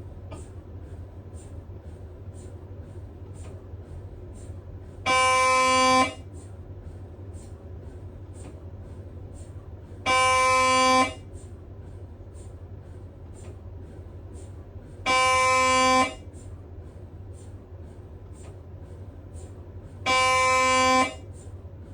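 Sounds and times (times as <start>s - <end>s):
mri scanner buzzing: 5.1s - 6.2s, 10.1s - 11.3s, 15.1s - 16.4s, 20.1s - 21.4s.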